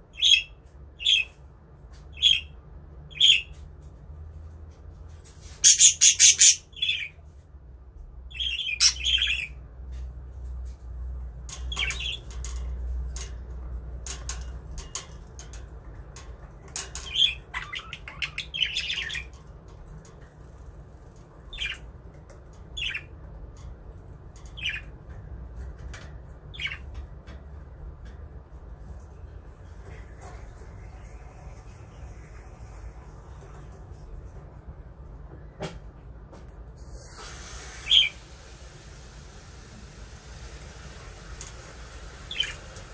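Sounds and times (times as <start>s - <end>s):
budgerigars squawking and chirping: 5.6s - 7.1s, 8.3s - 9.6s, 17.0s - 19.4s.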